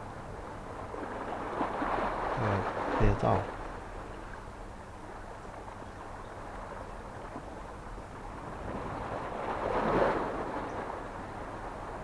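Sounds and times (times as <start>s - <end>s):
wave washing in: 0.9s - 3.7s, 8.3s - 12.0s
wind on microphone: 8.1s - 12.0s.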